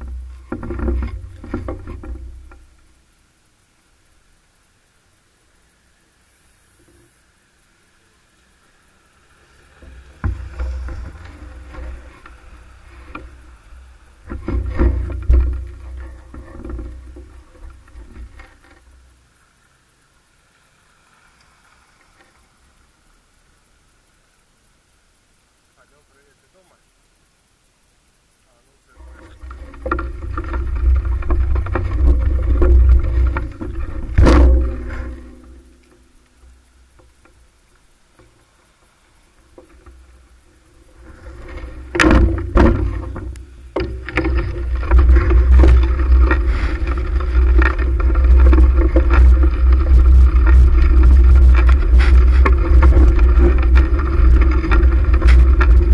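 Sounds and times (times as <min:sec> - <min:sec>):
wind rumble on microphone: 0:40.5 - 0:55.9.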